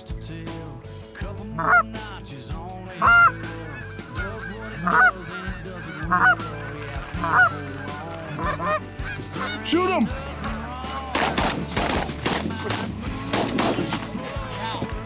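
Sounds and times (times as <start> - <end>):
flock of geese honking and clucking: 1.6 - 1.9, 2.9 - 10.5
goose honking loudly: 1.6 - 1.9, 3.0 - 10.3.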